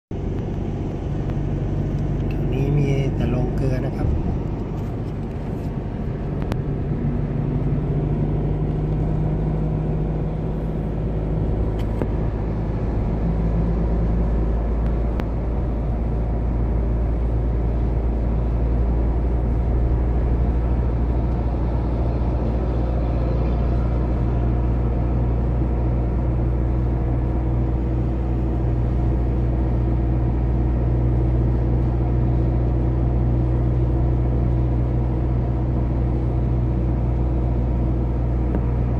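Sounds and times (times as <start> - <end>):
car engine and road noise: 0.1 - 38.9.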